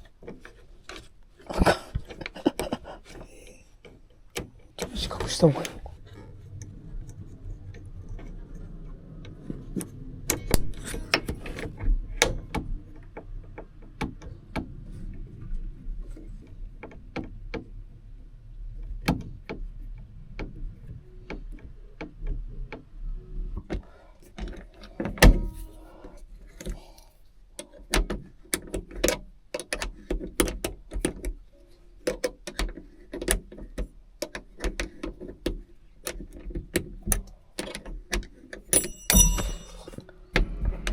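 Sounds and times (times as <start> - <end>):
metallic clicks and clinks: 38.8 - 40.0.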